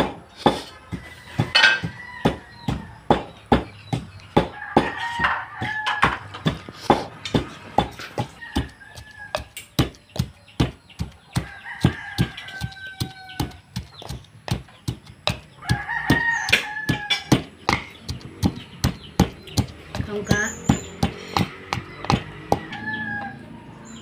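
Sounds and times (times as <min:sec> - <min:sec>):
steady knocking: 0:00.0 - 0:23.4
rooster crowing: 0:01.0 - 0:03.0, 0:04.4 - 0:06.3, 0:08.2 - 0:09.5, 0:11.4 - 0:13.6, 0:15.6 - 0:17.5, 0:22.3 - 0:23.9.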